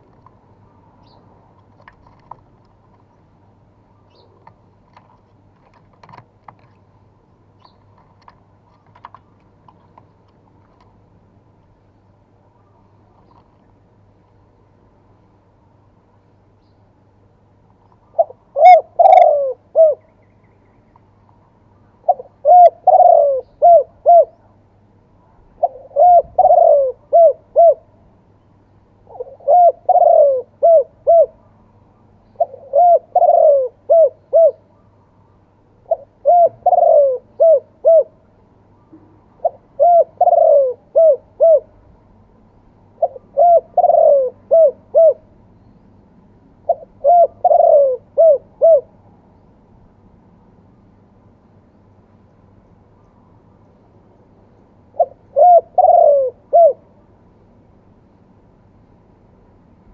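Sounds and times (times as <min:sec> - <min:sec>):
dove cooing: 0:18.0 - 0:20.2, 0:22.0 - 0:24.6, 0:25.4 - 0:28.0, 0:29.0 - 0:35.0, 0:35.8 - 0:41.8, 0:42.9 - 0:45.4, 0:46.6 - 0:49.0, 0:54.9 - 0:57.0.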